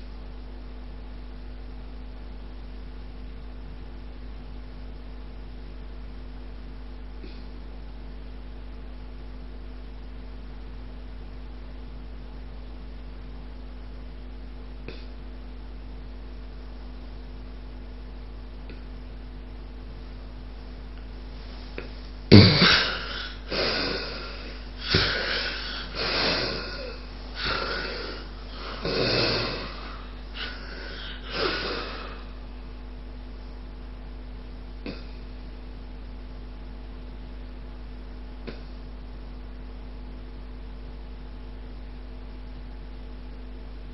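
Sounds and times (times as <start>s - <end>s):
steady electrical hum: 0.0s - 43.9s
quick noisy breaths: 21.4s - 32.4s
loud snort: 22.3s - 32.3s.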